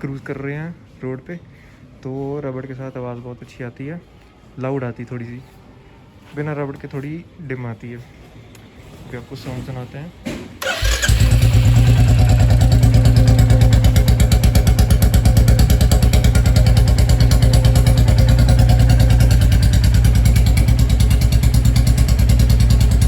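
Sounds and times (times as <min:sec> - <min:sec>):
motorcycle engine idling: 0:10.6 - 0:23.0.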